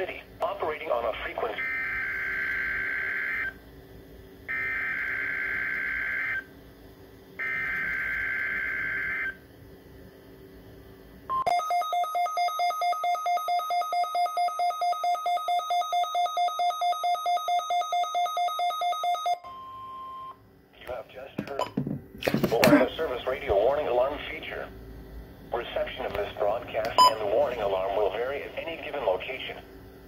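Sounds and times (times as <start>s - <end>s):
steady warning alarm tone: 1.2s - 3.6s, 4.5s - 6.5s, 7.4s - 9.4s, 11.3s - 20.4s, 26.9s - 29.6s
rapid electronic beeping: 26.9s - 29.5s.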